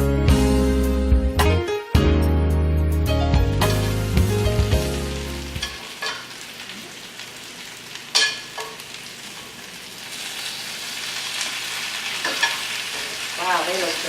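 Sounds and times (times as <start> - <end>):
background music: 0.0 - 5.9
chicken sizzling in oil: 3.6 - 14.0.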